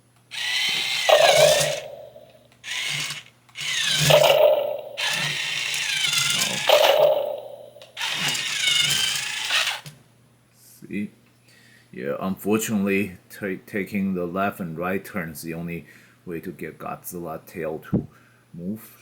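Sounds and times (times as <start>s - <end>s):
toy motor and gears whirring: 0.3s - 9.9s.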